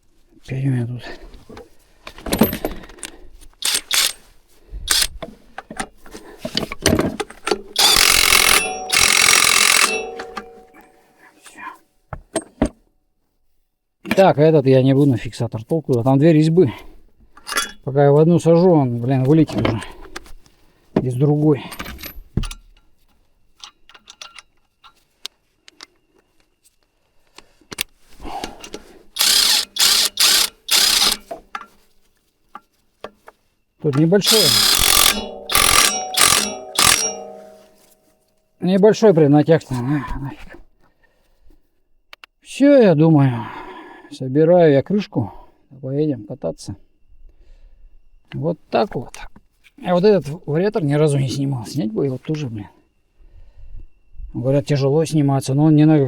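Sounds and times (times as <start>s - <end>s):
tools and metal parts clinking: 2.2s - 4.3s, 6.6s - 11.0s, 17.4s - 17.9s, 21.6s - 25.1s, 34.0s - 38.0s
power tool driving bolts: 3.6s - 4.2s, 4.9s - 5.1s, 7.5s - 10.6s, 29.2s - 31.4s, 34.2s - 37.7s.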